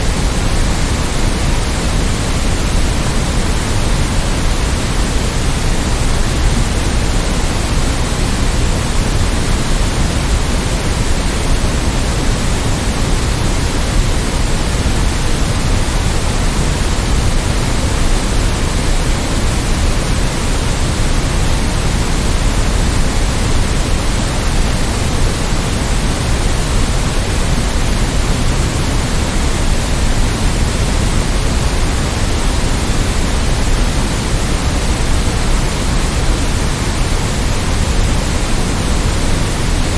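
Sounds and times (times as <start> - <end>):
white noise hiss: 0.0 - 39.9.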